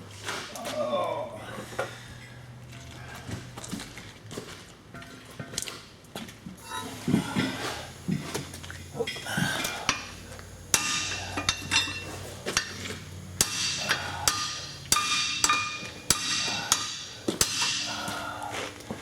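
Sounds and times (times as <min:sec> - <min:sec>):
hammer striking metal: 0:09.9 - 0:18.2.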